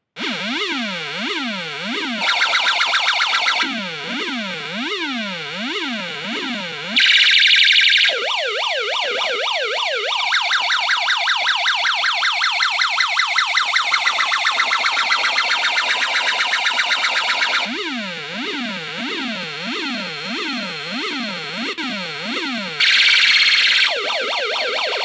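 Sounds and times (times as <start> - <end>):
electronic siren tones: 0.2 - 25.0.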